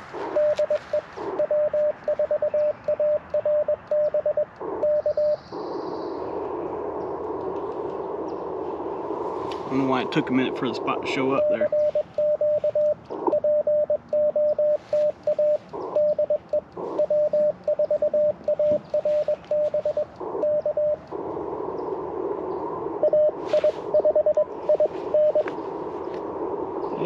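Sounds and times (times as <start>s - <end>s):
morse code tone: 0.0s - 5.4s, 11.4s - 21.0s, 23.0s - 25.5s
radio receiver hiss: 0.0s - 27.0s.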